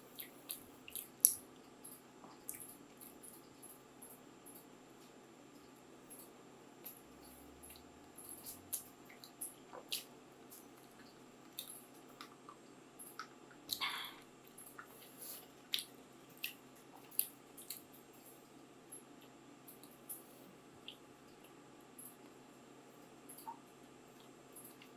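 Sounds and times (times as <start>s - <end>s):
chewing: 0.1s - 3.6s, 7.7s - 20.0s
wet mouth clicks: 13.2s - 14.1s.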